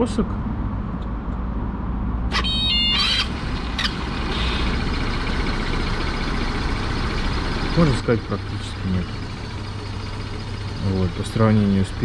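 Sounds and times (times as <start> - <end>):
high-pitched squeak: 2.3 - 4.7
scooter engine idling: 2.3 - 12.0.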